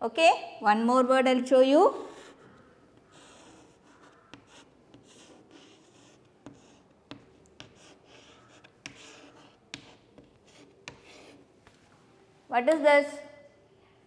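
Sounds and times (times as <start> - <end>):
scratchy writing on a board: 2.0 - 11.6.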